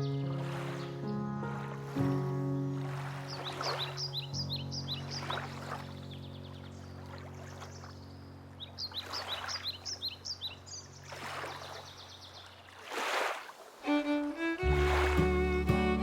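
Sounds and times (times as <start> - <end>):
held music chord: 0.0 - 2.9, 13.9 - 16.0
bird chirping: 3.3 - 12.7
melodic music: 13.9 - 16.0.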